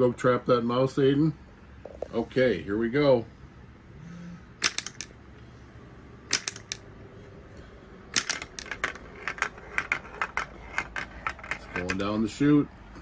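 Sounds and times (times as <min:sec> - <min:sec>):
plastic contraption clicking: 0:04.6 - 0:05.1, 0:06.3 - 0:06.8
ball rattling along plastic track: 0:04.6 - 0:05.2, 0:06.3 - 0:06.8, 0:08.1 - 0:12.3.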